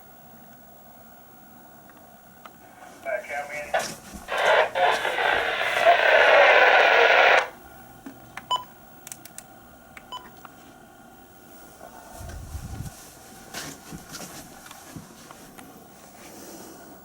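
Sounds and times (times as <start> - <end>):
scanner radio hiss: 2.6 - 7.6.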